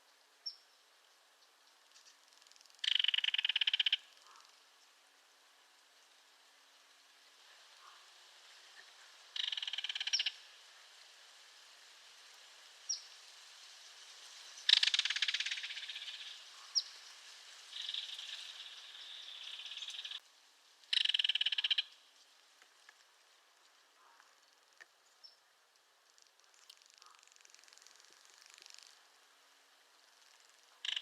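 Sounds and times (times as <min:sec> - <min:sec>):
kingfisher rattle call: 0:02.8 - 0:04.4, 0:09.4 - 0:10.4, 0:14.7 - 0:16.9, 0:17.7 - 0:20.2, 0:20.9 - 0:22.0, 0:30.4 - 0:31.0.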